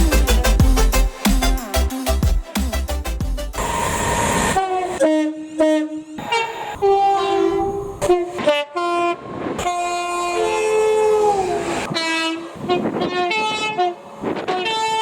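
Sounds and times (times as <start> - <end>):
two-tone train air horn: 3.6 - 15.0.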